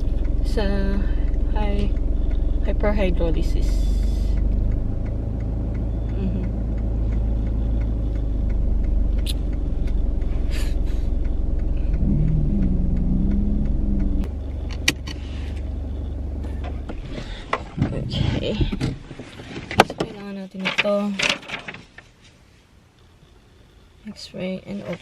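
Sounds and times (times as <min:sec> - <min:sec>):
car road noise rumble: 0:00.0 - 0:22.3
sharp click: 0:09.1 - 0:10.0.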